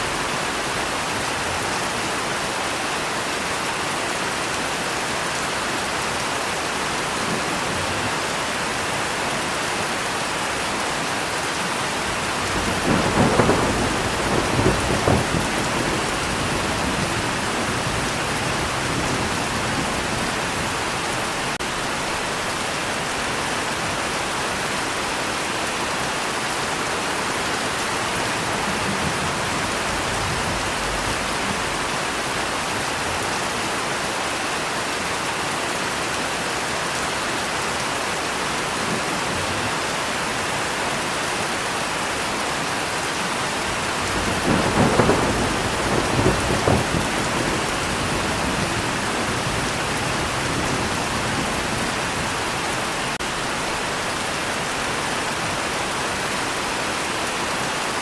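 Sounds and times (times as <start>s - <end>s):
heavy rain hissing: 0.0s - 35.6s, 38.4s - 58.0s
thunder rumbling: 12.1s - 22.2s, 28.0s - 32.5s, 43.7s - 53.9s.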